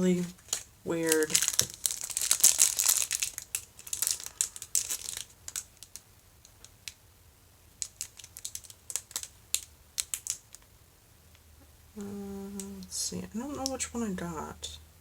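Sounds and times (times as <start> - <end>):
plastic packaging crinkling: 0.0 - 7.0, 7.7 - 10.7.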